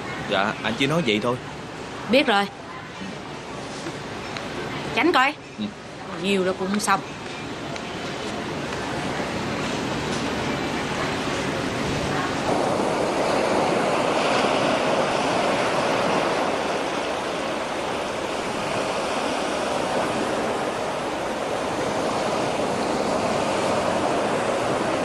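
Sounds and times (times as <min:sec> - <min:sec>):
rushing water: 0:07.2 - 0:25.0.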